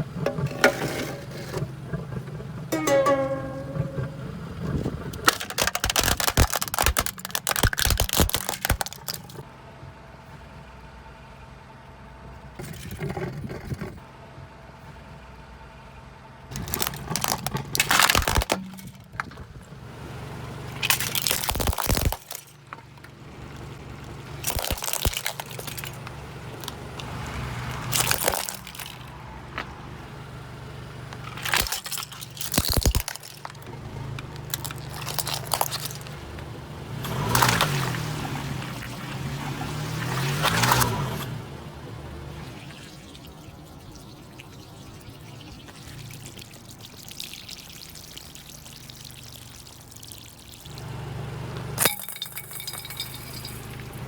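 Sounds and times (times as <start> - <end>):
car engine humming: 0.0 - 12.6, 14.1 - 21.6, 22.3 - 46.7, 50.4 - 54.0
tyres crushing crunchy objects: 5.2 - 9.4, 16.5 - 19.6, 20.7 - 23.6, 24.3 - 29.8, 31.1 - 41.4.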